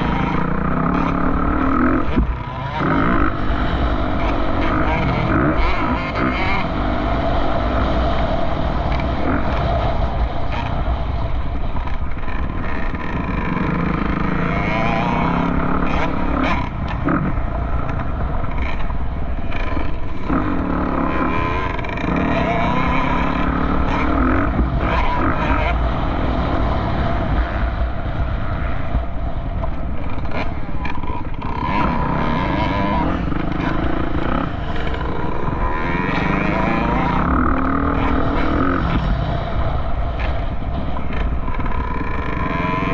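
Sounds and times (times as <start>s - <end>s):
off-road vehicle engine revving: 0.0s - 42.9s.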